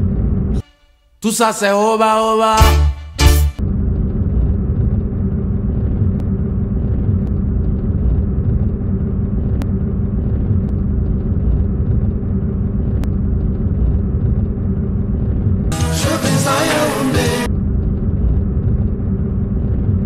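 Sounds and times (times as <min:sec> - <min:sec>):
motor vehicle engine rumble: 0:03.6 - 0:15.8, 0:17.1 - 0:20.0.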